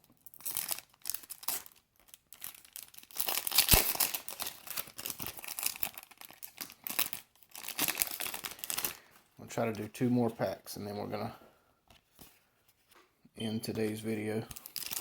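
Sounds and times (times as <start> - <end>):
foil wrapper crinkling and tearing: 0.0 - 9.2, 14.5 - 15.0.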